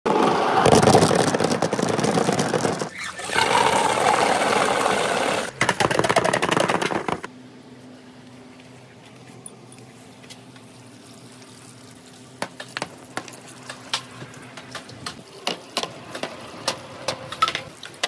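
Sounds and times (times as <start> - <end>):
balls rolling on marble-run track: 0.2 - 7.3, 14.5 - 17.7.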